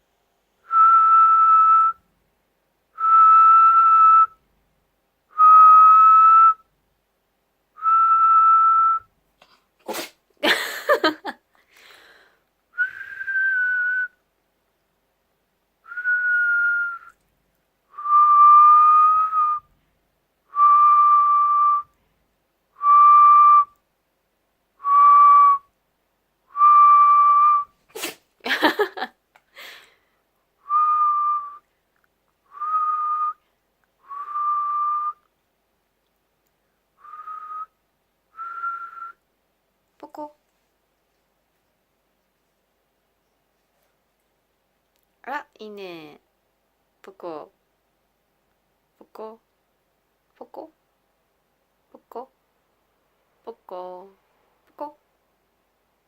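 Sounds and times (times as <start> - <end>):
person whistling a held note: 12.8 - 14.2, 34.0 - 35.2, 37.0 - 37.7, 38.4 - 39.2.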